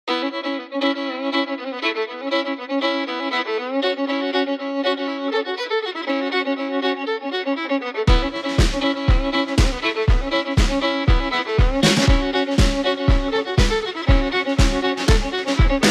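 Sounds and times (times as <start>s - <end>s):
fiddle music: 0.0s - 15.9s
steady drum beat: 8.1s - 15.9s.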